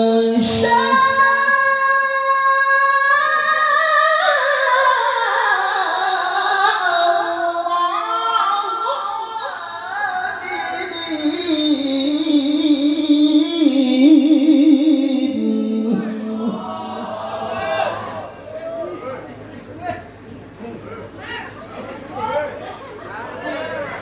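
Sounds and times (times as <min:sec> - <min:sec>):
man reciting melodically: 0:00.0 - 0:17.1.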